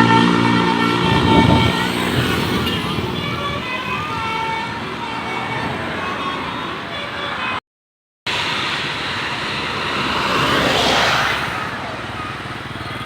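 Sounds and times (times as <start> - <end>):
bus engine: 0.0 - 7.6, 8.3 - 13.0
musical air horn gliding tones: 0.0 - 7.6
road noise: 0.0 - 7.6, 8.3 - 13.0.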